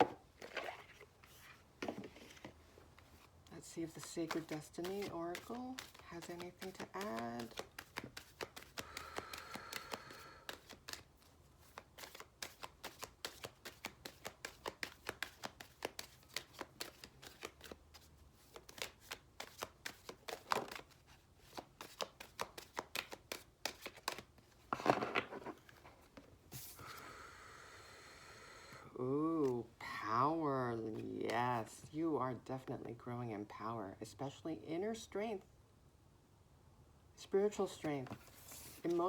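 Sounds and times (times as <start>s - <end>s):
cards rustling swishes: 0.4s - 26.9s, 37.6s - 39.0s
cards slapping together: 3.9s - 24.4s.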